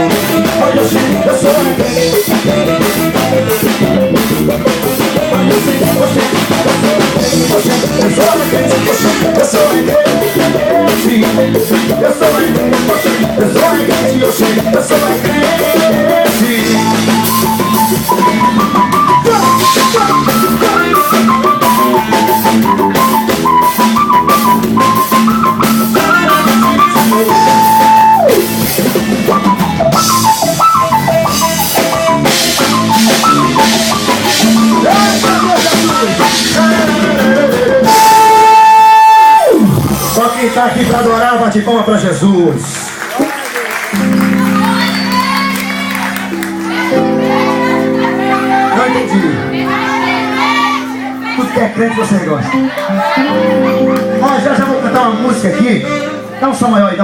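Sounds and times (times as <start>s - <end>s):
drum kit beat: 0.0s - 41.4s, 43.7s - 56.4s
high lead melody: 0.0s - 42.1s, 43.8s - 57.0s
bass: 0.0s - 43.1s.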